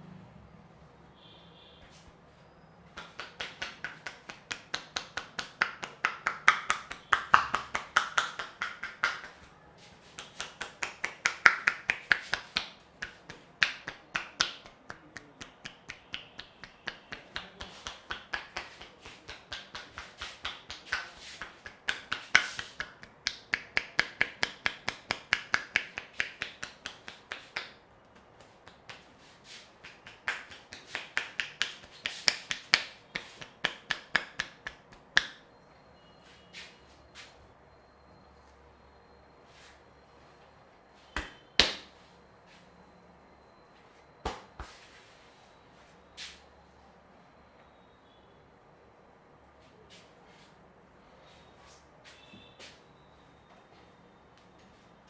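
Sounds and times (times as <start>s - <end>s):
hands slapping in massage strokes: 3.0s - 35.4s, 41.2s - 42.0s, 44.2s - 45.1s.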